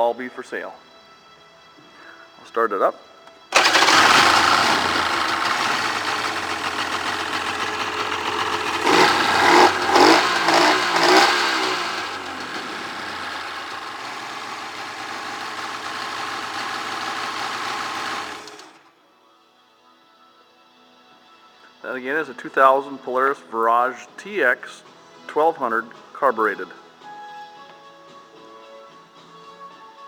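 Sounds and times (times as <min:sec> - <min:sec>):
jet ski engine revving and idling: 0:03.6 - 0:18.8.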